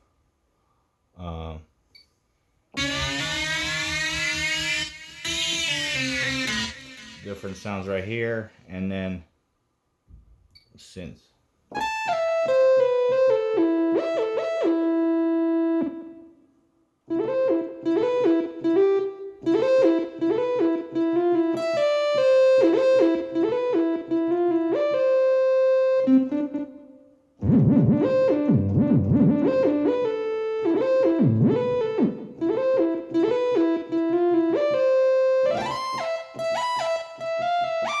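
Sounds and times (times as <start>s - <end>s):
synthesizer melodic phrase: 2.8s - 8.0s
deep synth bass notes: 27.4s - 33.5s.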